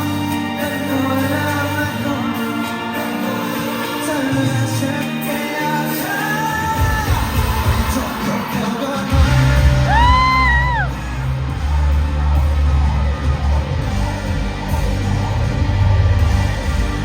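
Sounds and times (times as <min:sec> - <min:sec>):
live pop-rock band playing: 0:00.0 - 0:17.0
person singing: 0:00.0 - 0:17.0
heavy bass and drums: 0:06.8 - 0:08.3, 0:09.0 - 0:17.0.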